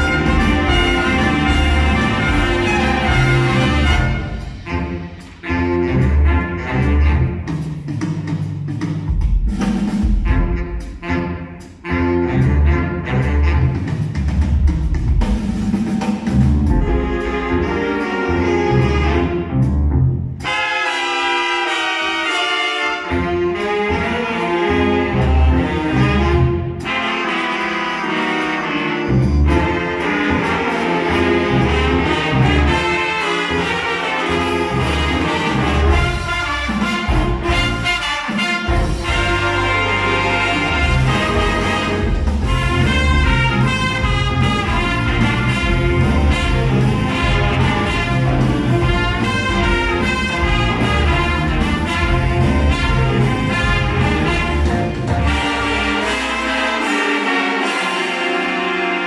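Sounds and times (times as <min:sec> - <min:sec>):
ensemble playing upbeat music: 0:00.0 - 0:07.8, 0:23.0 - 0:59.0.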